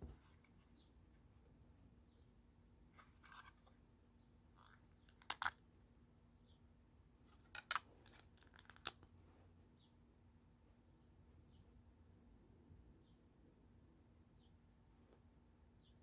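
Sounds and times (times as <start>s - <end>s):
plastic bricks clicking and rattling: 7.4s - 9.0s.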